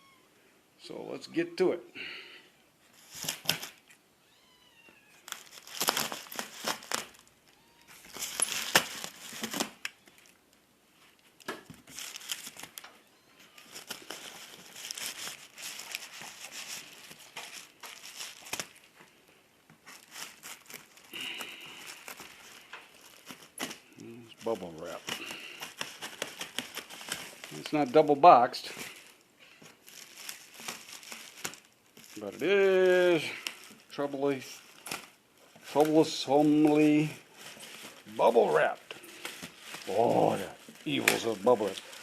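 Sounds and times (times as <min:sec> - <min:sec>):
kitten meowing: 0:00.0 - 0:00.3, 0:04.2 - 0:05.2, 0:07.5 - 0:08.1
bubble wrap crinkling: 0:02.8 - 0:04.0, 0:04.8 - 0:42.0.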